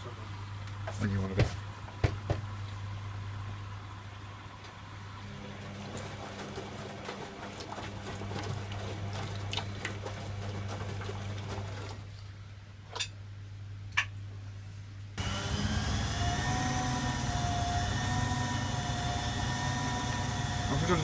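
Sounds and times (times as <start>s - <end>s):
washing machine hum: 0.0s - 21.0s
motor starting with a whine: 15.2s - 21.0s.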